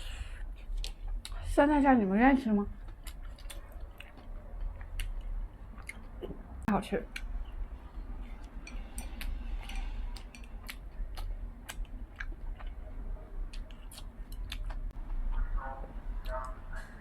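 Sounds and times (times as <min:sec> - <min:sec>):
person chewing: 0:00.0 - 0:01.4, 0:02.8 - 0:06.5, 0:07.1 - 0:15.5
steady low hum: 0:00.0 - 0:17.0.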